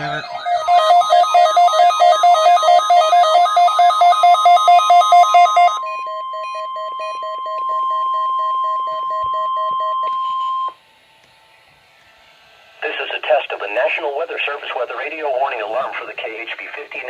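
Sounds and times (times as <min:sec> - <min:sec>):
radio receivers beeping rapidly: 0:00.0 - 0:04.8
steady warning alarm tone: 0:00.0 - 0:11.3.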